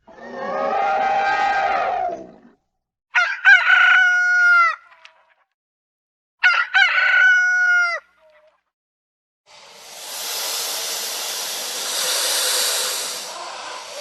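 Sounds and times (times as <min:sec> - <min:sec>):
rooster crowing: 0:03.2 - 0:04.8, 0:06.4 - 0:08.0.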